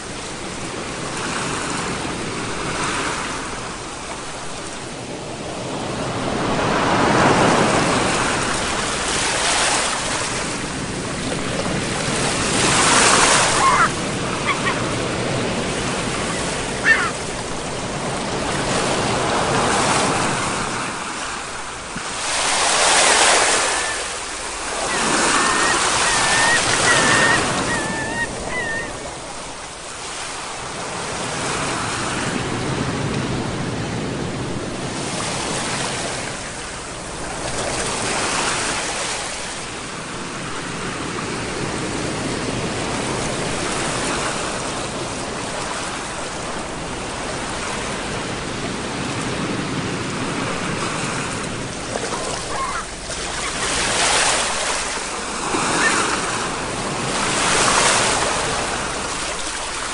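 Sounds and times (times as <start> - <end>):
sea waves breaking: 0.0 - 59.9
wavering high-pitched call: 13.5 - 14.8, 16.8 - 17.2, 23.4 - 29.1.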